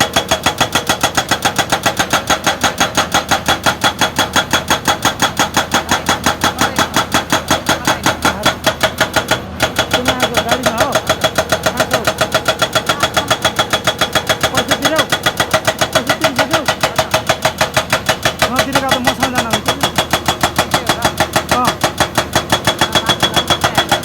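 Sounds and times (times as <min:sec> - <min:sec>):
excavator diesel engine pulsing: 0:00.0 - 0:24.0.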